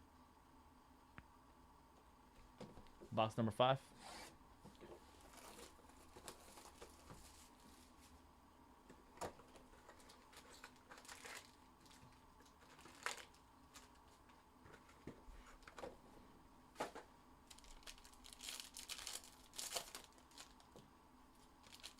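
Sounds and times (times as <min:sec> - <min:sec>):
packaging crinkling and tearing: 0:09.8 - 0:14.0, 0:17.4 - 0:20.8, 0:21.5 - 0:21.9.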